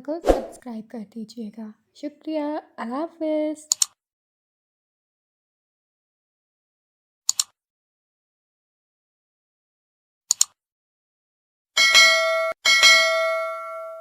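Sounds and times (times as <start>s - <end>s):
bright bell dings: 11.8s - 14.0s.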